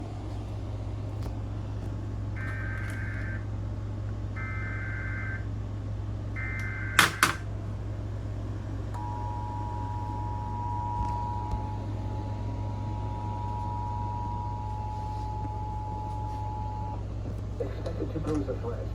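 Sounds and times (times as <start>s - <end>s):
steady low hum: 0.0s - 18.9s
two-tone attention signal: 9.0s - 12.3s.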